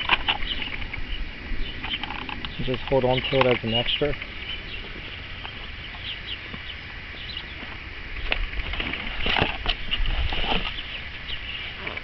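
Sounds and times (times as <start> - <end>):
insects chirring: 0.0 - 12.0
handling knocks and rustling: 7.6 - 10.8.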